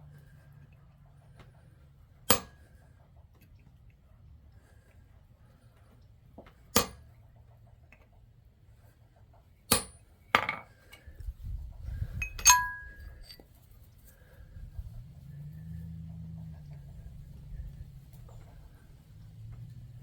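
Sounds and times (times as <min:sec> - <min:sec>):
blacksmith tools clinking metal: 0:09.7 - 0:11.0, 0:12.2 - 0:13.5.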